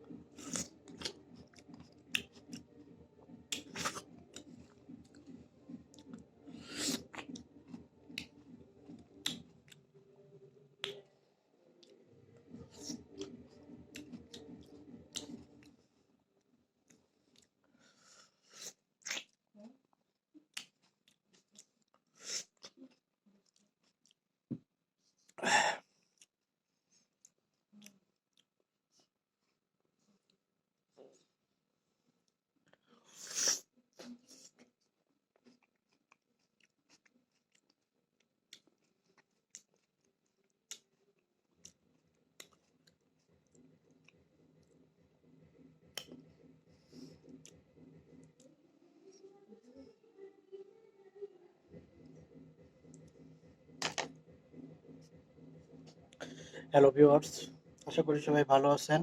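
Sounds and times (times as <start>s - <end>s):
chewing raw tomato: 0.0s - 9.8s, 11.8s - 15.7s, 18.5s - 19.8s, 20.4s - 24.2s, 32.7s - 44.8s, 45.8s - 48.5s
wet chewing: 0.1s - 9.8s, 38.5s - 44.8s.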